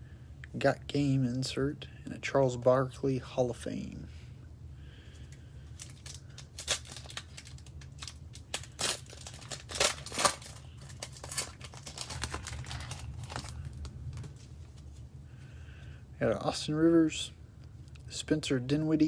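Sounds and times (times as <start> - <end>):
plastic wrapper tearing and crinkling: 5.8 - 14.5.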